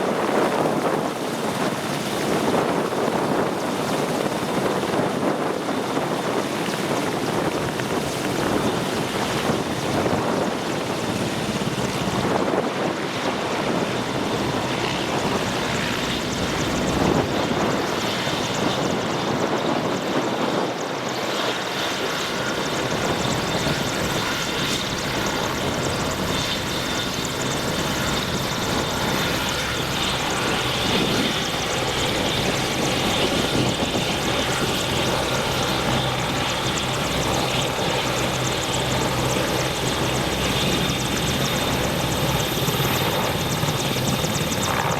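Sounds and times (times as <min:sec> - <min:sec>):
helicopter rotor and engines: 0:00.0 - 0:44.9
high turbine whine: 0:13.6 - 0:44.9
steady whining tones: 0:21.8 - 0:44.9.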